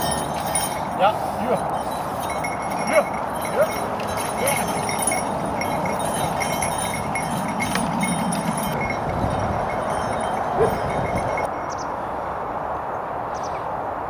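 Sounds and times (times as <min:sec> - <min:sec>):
metallic harness jingling: 0:00.0 - 0:11.5.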